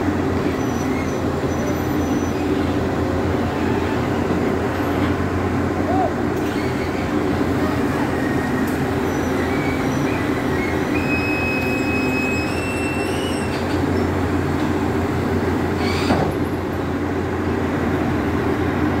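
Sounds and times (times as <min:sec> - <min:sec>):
excavator diesel engine: 0:00.0 - 0:19.0
thin high squeals: 0:09.1 - 0:13.7.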